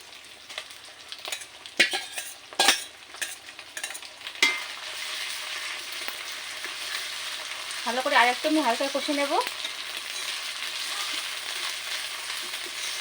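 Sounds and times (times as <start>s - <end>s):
spice paste sizzling in oil: 0.0s - 13.0s
metal spatula scraping a pan: 1.2s - 7.2s, 9.5s - 13.0s.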